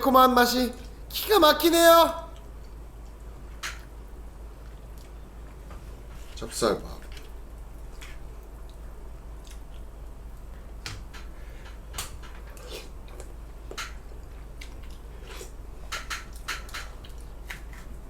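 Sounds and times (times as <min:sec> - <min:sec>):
person chewing: 0:04.6 - 0:05.6, 0:07.0 - 0:09.9, 0:12.4 - 0:15.6, 0:16.2 - 0:18.0
wet mouth clicks and smacks: 0:09.4 - 0:09.9.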